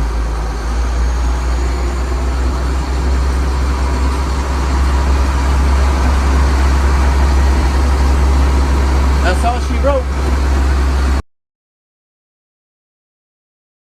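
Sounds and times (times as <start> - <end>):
diesel engine droning: 0.0 - 11.2.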